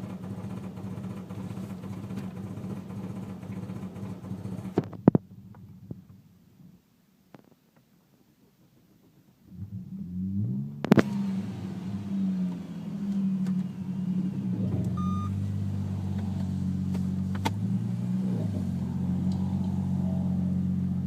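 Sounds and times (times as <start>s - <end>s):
car engine idling roughly: 0.0s - 5.9s
short electronic beep: 15.0s - 15.4s.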